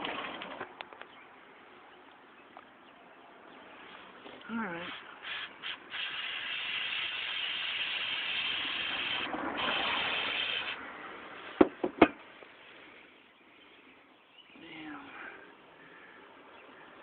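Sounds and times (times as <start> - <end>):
aerosol cleaner spraying: 4.8 - 10.8.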